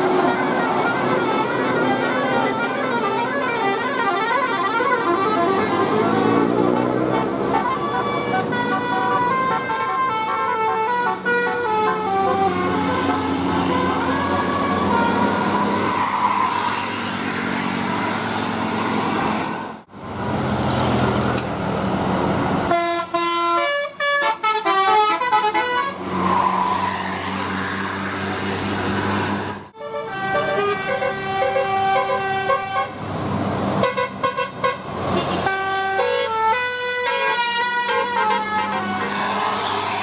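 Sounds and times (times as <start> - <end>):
musical bus horn melodies: 0.0 - 15.7, 22.7 - 26.0, 29.7 - 39.6
bus engine and road noise: 0.0 - 40.0.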